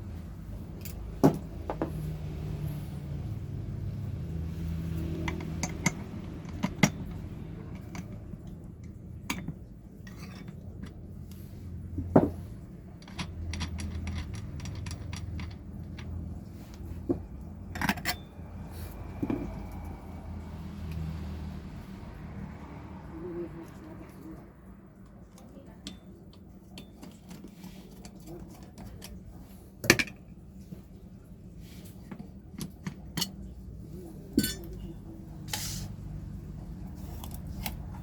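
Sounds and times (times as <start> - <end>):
hard parts clicking and clinking: 5.0 - 11.4, 12.0 - 19.8, 34.3 - 34.9.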